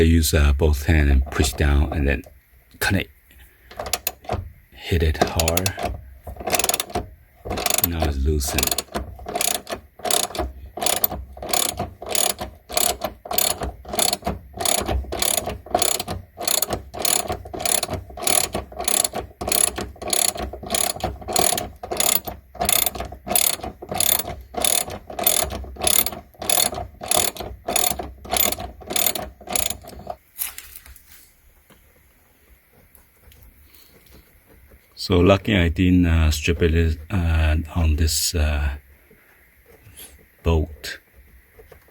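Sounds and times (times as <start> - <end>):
ratchet wrench clicking: 3.7 - 4.4, 5.1 - 30.2.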